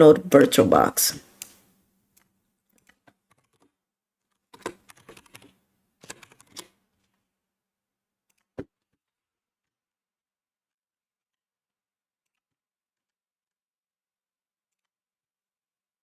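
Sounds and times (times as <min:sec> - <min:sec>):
keyboard typing: 0:04.6 - 0:06.7.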